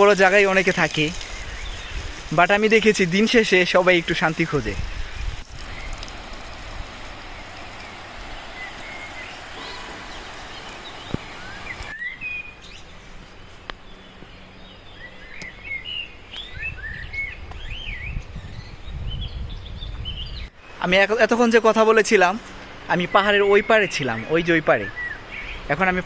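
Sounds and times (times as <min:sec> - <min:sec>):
outdoor background noise: 0:00.0 - 0:26.0
small birds chirping: 0:00.0 - 0:26.0
wind rumble on microphone: 0:01.1 - 0:02.3, 0:04.6 - 0:13.3, 0:15.8 - 0:20.5.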